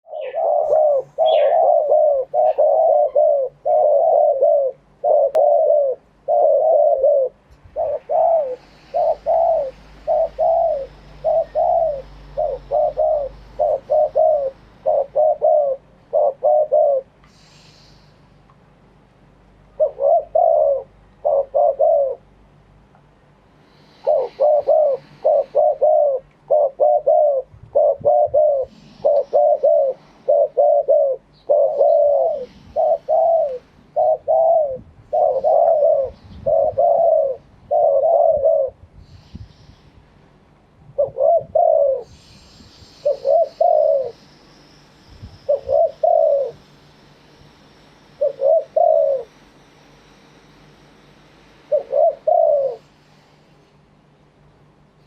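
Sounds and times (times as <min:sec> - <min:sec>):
dove cooing: 0:00.0 - 0:17.2, 0:19.7 - 0:22.3, 0:23.7 - 0:39.3, 0:40.9 - 0:44.6, 0:45.4 - 0:46.7, 0:48.0 - 0:49.4, 0:51.7 - 0:52.9.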